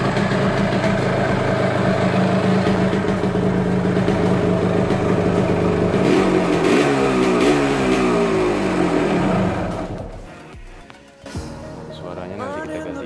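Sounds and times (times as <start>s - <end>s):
two-stroke motorcycle engine revving: 0.0s - 10.3s.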